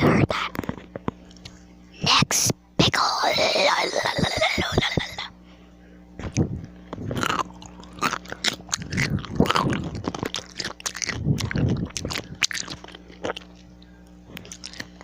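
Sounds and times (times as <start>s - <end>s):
pickle crunching being chewed: 6.2s - 15.0s.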